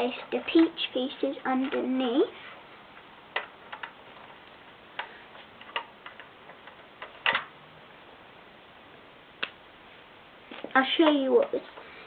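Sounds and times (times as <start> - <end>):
plastic bricks clicking: 3.3 - 4.4.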